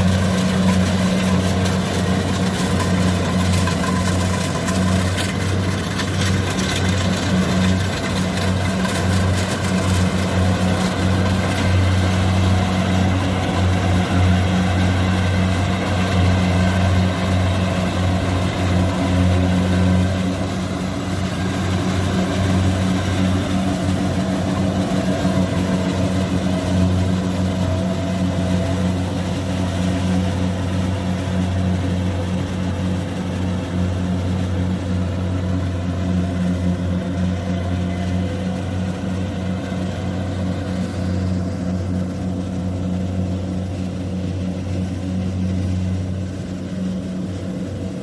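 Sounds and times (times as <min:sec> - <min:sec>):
heavy diesel engine humming: 0:00.0 - 0:48.0.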